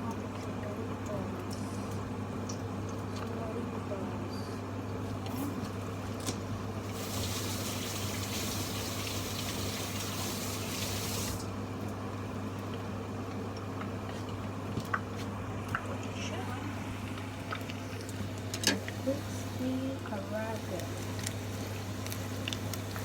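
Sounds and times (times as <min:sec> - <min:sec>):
kitchen tap running: 0:05.6 - 0:23.0.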